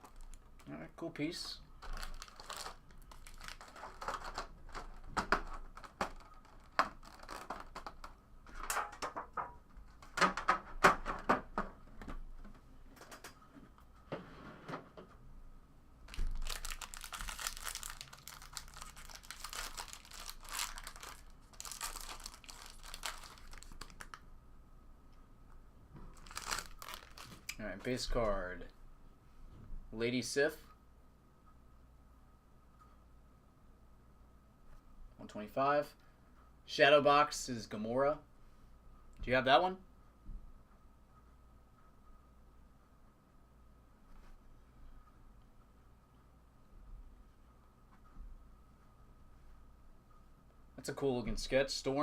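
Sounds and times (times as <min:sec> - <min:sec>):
wrappers crinkling and tearing: 0:00.0 - 0:00.8, 0:01.8 - 0:08.2, 0:16.1 - 0:24.2, 0:26.1 - 0:27.6.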